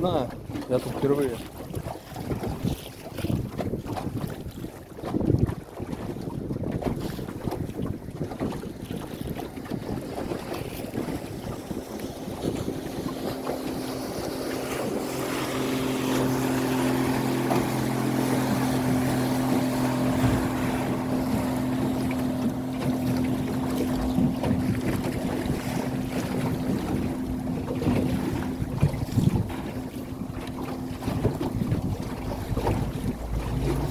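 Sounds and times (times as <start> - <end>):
outboard motor running: 0.0 - 33.9
wind on microphone: 0.0 - 33.9
water rushing past: 8.4 - 33.9.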